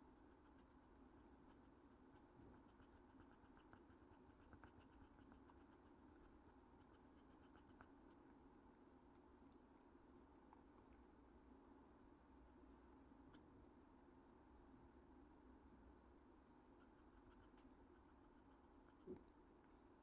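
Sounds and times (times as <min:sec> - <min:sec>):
pencil scratching on paper: 0:00.0 - 0:08.2.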